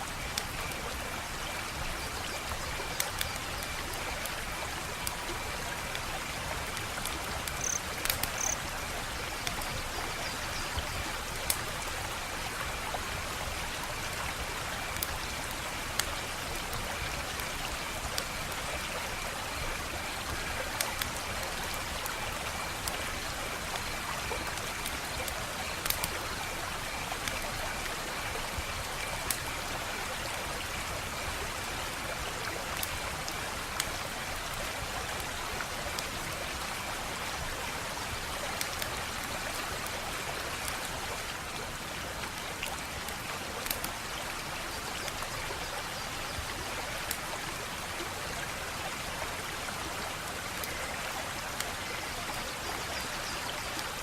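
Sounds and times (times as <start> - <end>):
wood fire crackling: 0.3 - 28.0, 32.3 - 36.3, 42.2 - 44.0
sharp pops and snaps: 6.8 - 8.6.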